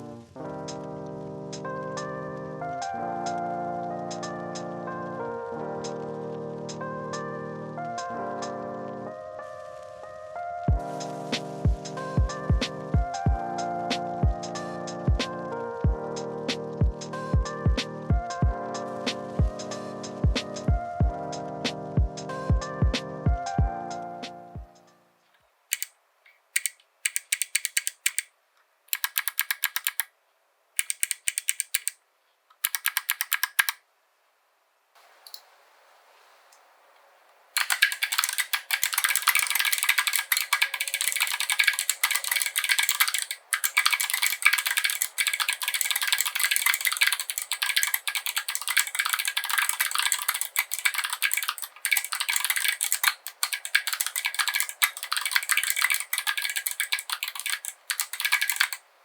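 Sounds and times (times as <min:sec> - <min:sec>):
typing on clicky mechanical keyboard: 0:25.7 - 0:25.9, 0:26.5 - 0:28.3, 0:28.9 - 0:30.1, 0:30.8 - 0:32.0, 0:32.6 - 0:33.8, 0:37.6 - 0:58.8.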